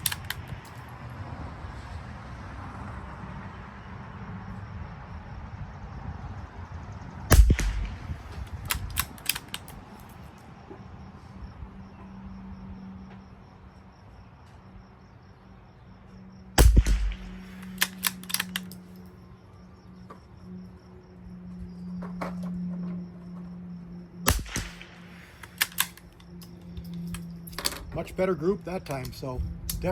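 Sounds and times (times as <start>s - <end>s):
rifle shots: 0.0s - 0.6s, 7.3s - 9.8s, 16.6s - 18.8s, 24.3s - 26.1s.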